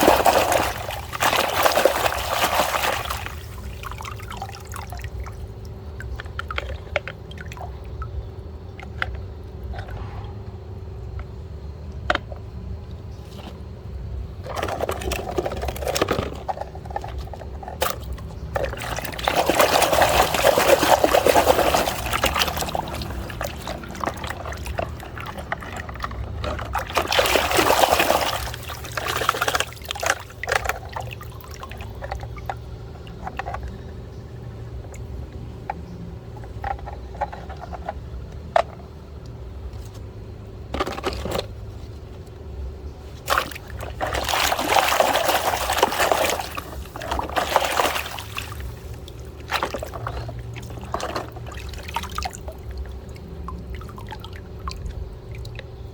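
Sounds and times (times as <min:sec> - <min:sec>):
water pouring over toys: 0:00.0 - 0:07.8, 0:17.7 - 0:32.6, 0:43.3 - 0:55.7.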